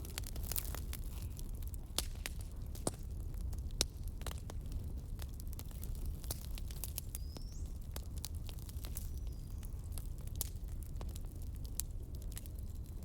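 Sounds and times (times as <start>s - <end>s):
fire crackling: 0.0s - 13.0s.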